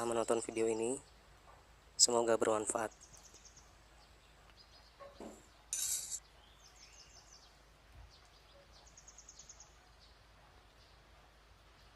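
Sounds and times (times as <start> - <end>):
short loud hiss: 5.7 - 6.2.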